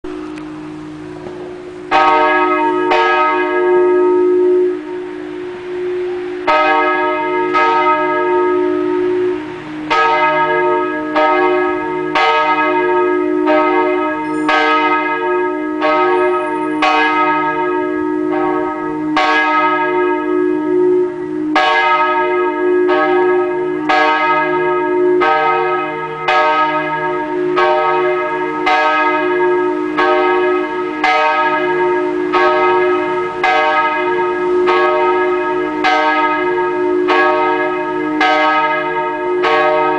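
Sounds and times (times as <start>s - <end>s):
steady sustained hum: 0.0s - 12.1s
church bell ringing: 0.0s - 39.9s.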